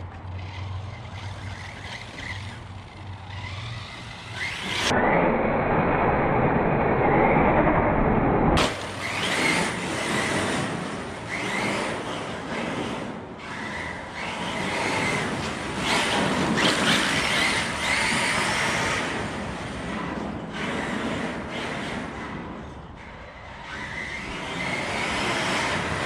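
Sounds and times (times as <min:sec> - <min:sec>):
electric motor whining: 0:00.2 - 0:04.9.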